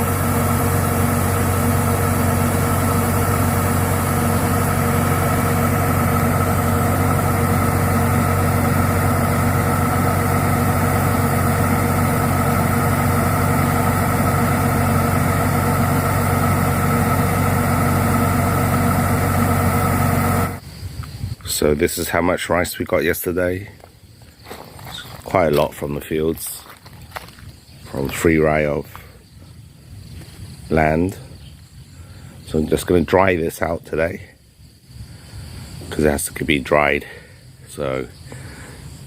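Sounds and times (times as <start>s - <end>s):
diesel engine running steadily: 0.0s - 20.9s, 35.0s - 39.0s.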